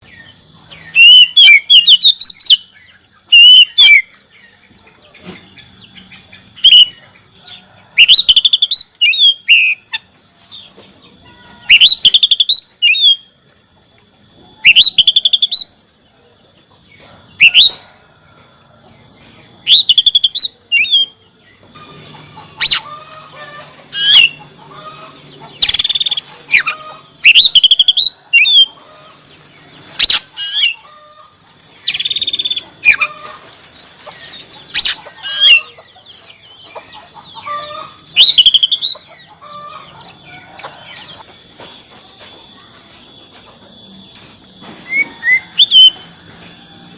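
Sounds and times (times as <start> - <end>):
bird singing whistled phrases: 0.9 - 2.7, 3.3 - 4.1, 11.7 - 13.3, 14.6 - 15.7, 19.7 - 21.2, 27.2 - 28.7, 31.9 - 32.6, 44.9 - 46.1.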